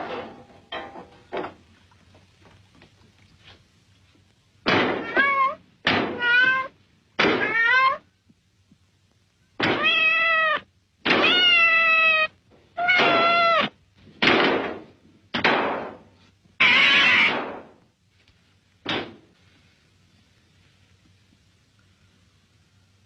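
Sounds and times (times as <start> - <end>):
cat meowing loudly: 4.9 - 8.1, 9.6 - 13.8, 16.6 - 17.6.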